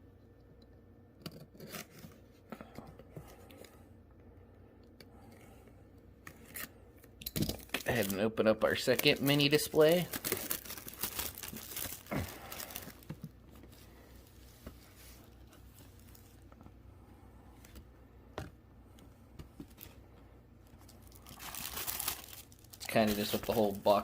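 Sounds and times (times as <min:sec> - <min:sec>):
packaging crinkling and tearing: 0:07.6 - 0:16.5, 0:20.6 - 0:24.0.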